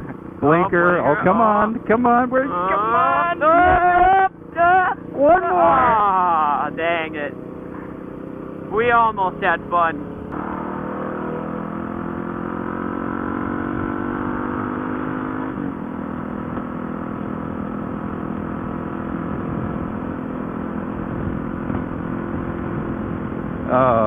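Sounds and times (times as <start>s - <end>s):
motorcycle engine revving: 0.0s - 24.0s.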